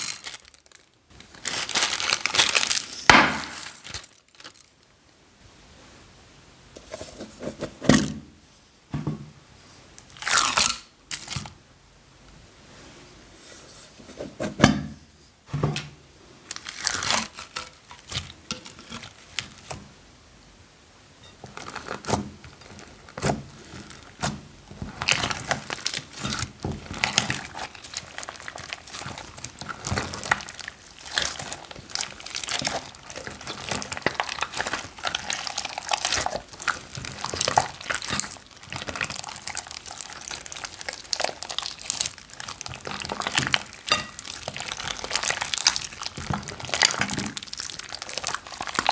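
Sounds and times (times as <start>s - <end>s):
wet slime sounds: 0.0s - 4.7s, 16.5s - 19.8s, 21.4s - 48.9s
plastic bags crinkling: 0.0s - 4.8s, 10.1s - 11.5s, 16.5s - 19.8s, 21.4s - 48.9s.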